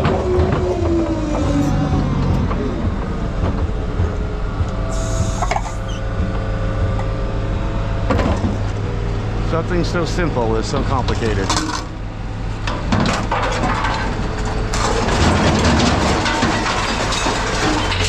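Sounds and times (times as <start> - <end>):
hydraulic machine running: 0.0 - 18.0
metallic clatters: 11.2 - 12.0, 12.6 - 18.0.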